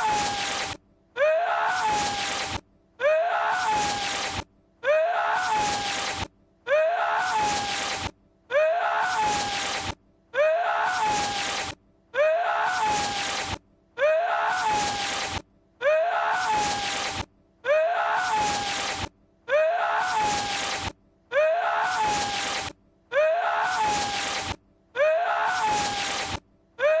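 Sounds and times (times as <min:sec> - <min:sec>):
breathy hissing cry: 0:00.0 - 0:27.0.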